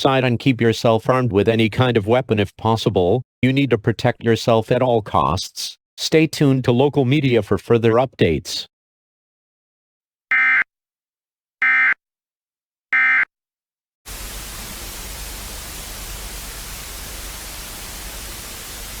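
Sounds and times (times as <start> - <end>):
static hiss: 14.1 - 19.0.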